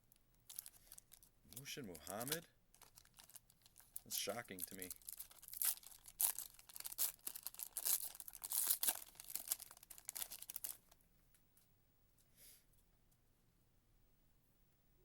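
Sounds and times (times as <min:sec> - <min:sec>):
foil wrapper tearing and crinkling: 0:00.5 - 0:11.0.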